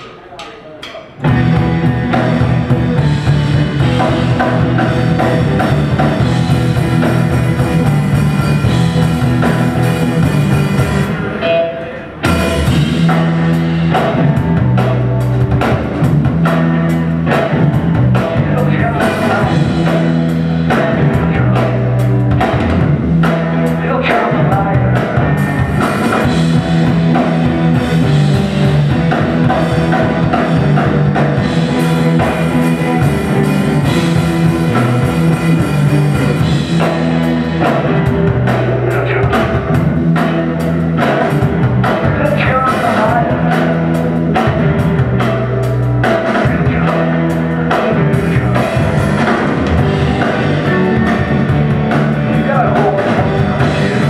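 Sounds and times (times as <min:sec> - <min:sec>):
drum kit fast beat: 0:00.0 - 0:11.3, 0:12.2 - 0:54.0
rock band playing live: 0:00.0 - 0:54.0.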